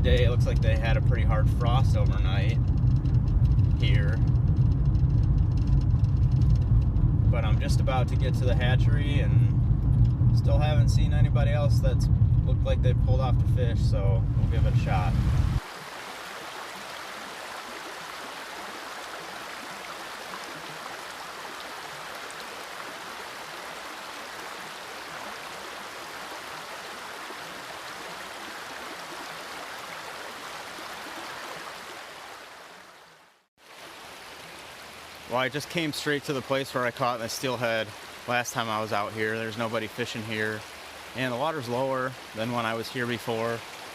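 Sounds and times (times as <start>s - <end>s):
low car cabin rumble: 0.0s - 15.6s
river rushing: 14.6s - 43.9s.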